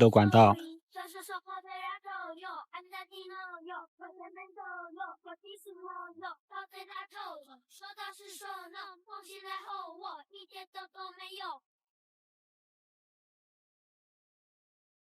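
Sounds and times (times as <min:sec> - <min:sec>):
high childlike voice singing: 0:00.0 - 0:11.6.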